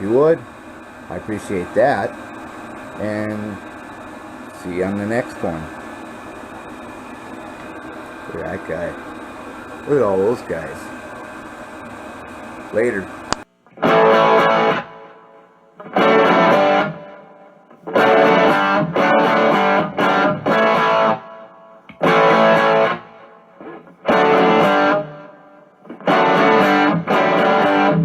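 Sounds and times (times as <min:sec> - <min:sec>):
distorted electric guitar chords: 0:12.6 - 0:28.0.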